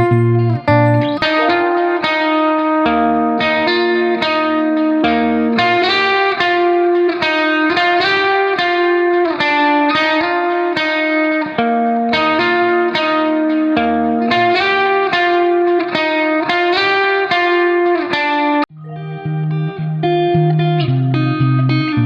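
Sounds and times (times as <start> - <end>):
guitar plucked melody: 0.0 - 22.0.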